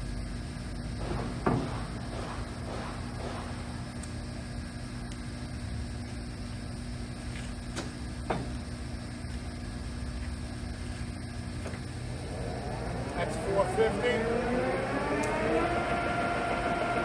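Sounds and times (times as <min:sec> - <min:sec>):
lathe humming: 0:10.6 - 0:17.0.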